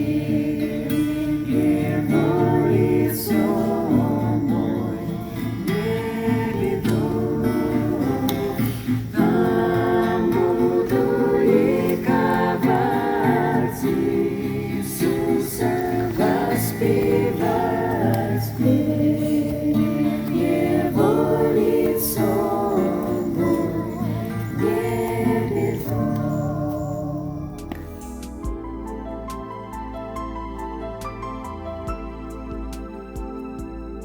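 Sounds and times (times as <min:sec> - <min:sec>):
group singing a hymn: 0:00.0 - 0:28.1.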